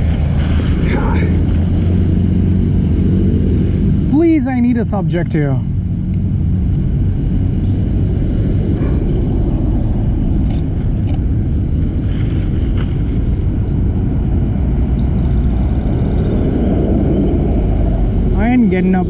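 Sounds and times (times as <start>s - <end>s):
street traffic rumble: 0.0s - 19.0s.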